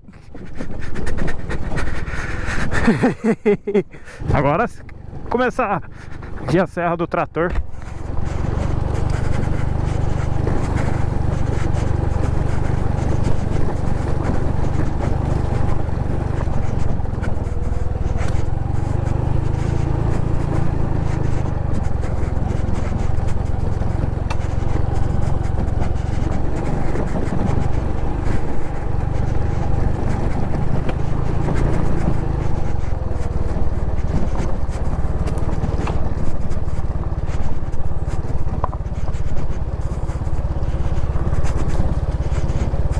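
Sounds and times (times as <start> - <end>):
knocks and scrapes from bumpy ground: 0.0 - 42.9
motorcycle engine running: 0.0 - 42.9.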